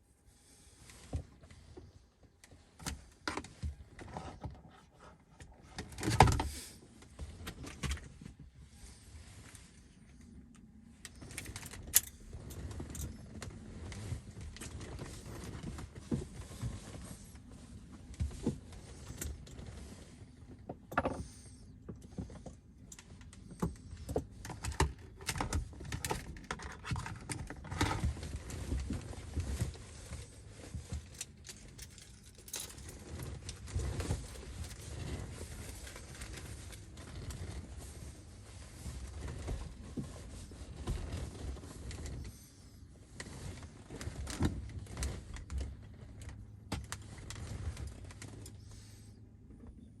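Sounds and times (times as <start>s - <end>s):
tools and small parts rattling: 30.9s - 37.6s.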